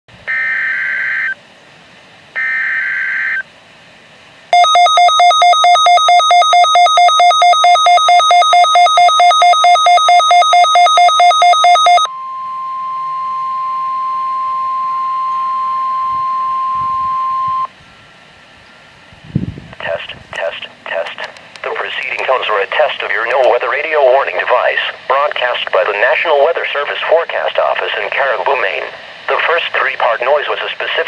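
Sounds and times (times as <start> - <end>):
pulsing two-pitch electronic alarm: 0.3 - 1.4, 2.4 - 3.4, 4.6 - 17.7
steady warning alarm tone: 0.3 - 1.4, 2.4 - 3.5, 4.5 - 18.2
digital buzzing burst: 2.4 - 3.4.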